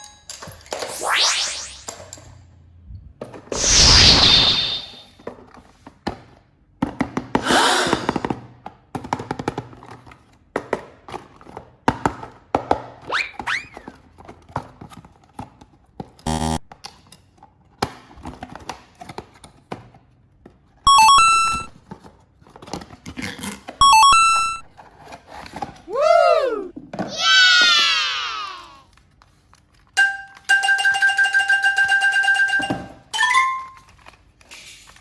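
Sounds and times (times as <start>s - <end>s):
swish: 3.6s - 5.0s
short buzz: 16.3s - 16.6s
electronic jingle of beeping tones: 20.9s - 21.7s, 23.8s - 24.6s.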